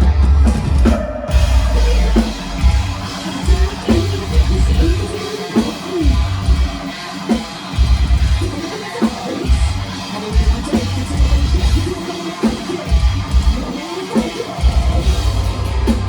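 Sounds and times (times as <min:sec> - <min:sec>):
metalcore band music: 0:00.0 - 0:16.0.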